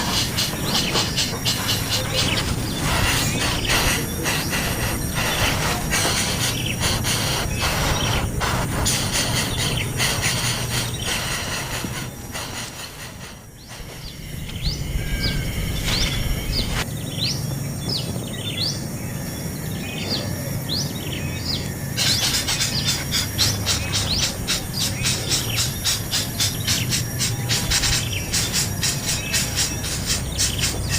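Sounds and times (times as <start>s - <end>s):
fast buzzing bird rattle: 0.0s - 14.6s, 21.8s - 30.9s
birds chirping: 0.0s - 30.9s.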